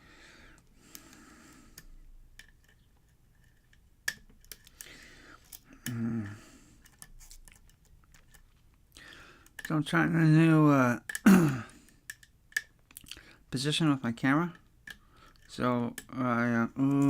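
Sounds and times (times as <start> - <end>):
lock pick clicking and scraping: 0.6 - 5.8, 6.8 - 8.8, 9.4 - 9.8, 11.0 - 12.9, 14.6 - 16.2
person humming: 5.8 - 6.4.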